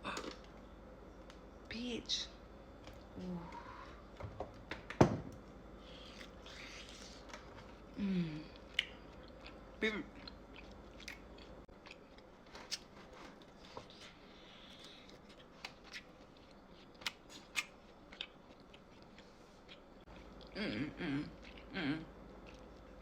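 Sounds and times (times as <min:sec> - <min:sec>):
chewing crunches and clicks: 0:08.5 - 0:20.6, 0:21.3 - 0:21.7, 0:22.4 - 0:23.0.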